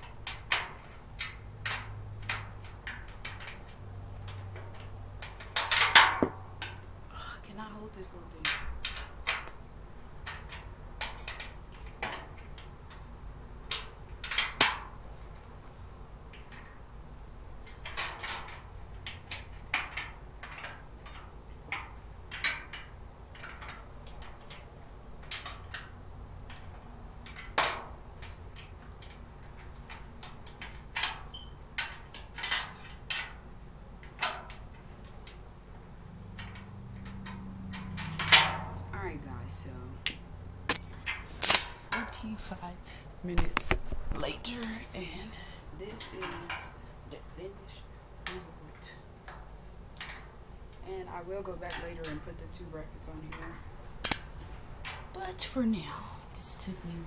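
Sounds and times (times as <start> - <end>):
clicks and clinks of parts: 0.3 - 6.9, 36.4 - 38.8, 40.0 - 41.8, 43.4 - 44.2, 54.0 - 55.0.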